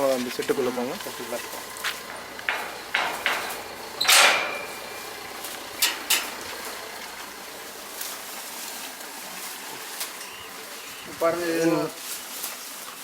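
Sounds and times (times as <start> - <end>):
gate scraping clatter: 0.9 - 8.8
sharp knocks: 2.2 - 6.9.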